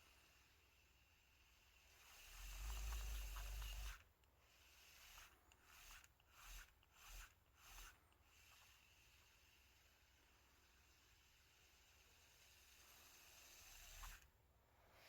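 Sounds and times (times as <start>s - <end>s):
fishing reel gears swishing: 2.1s - 4.0s, 4.6s - 8.0s.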